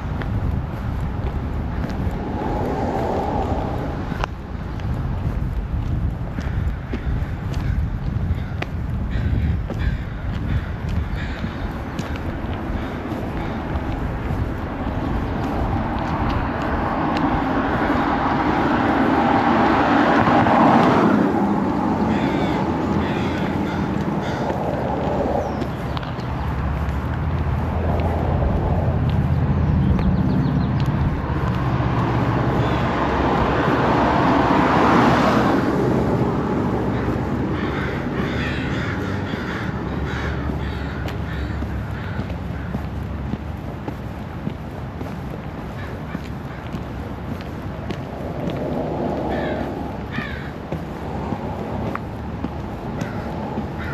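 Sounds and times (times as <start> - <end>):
broad rush of noise: 0.0 - 53.9
vehicle passing on road: 0.0 - 53.9
wind rumble on microphone: 0.0 - 53.9
crows cawing: 4.0 - 4.5, 6.2 - 27.7, 31.2 - 43.4, 45.6 - 53.9.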